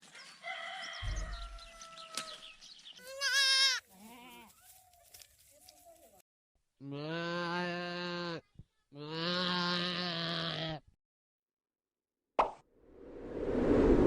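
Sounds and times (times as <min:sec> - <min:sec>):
goat bleating: 0:03.0 - 0:04.7, 0:06.8 - 0:10.9.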